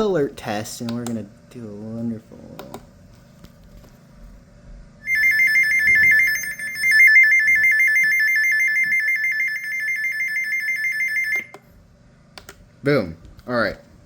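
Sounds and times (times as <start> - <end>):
warbling alarm tone: 5.0 - 11.5.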